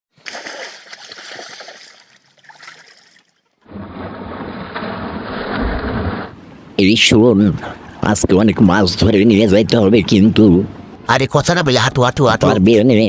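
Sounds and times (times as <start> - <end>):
water splashing and trickling: 0.2 - 6.8.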